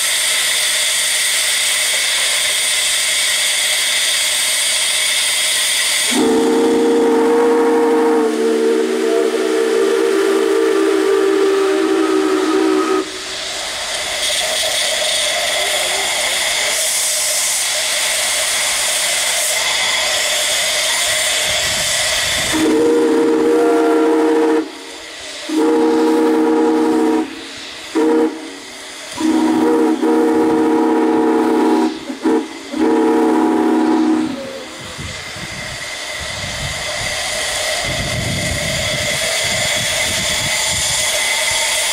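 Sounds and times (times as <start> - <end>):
steam hissing: 0.0 - 41.9
steam whistle blowing: 5.6 - 13.4, 19.4 - 35.3.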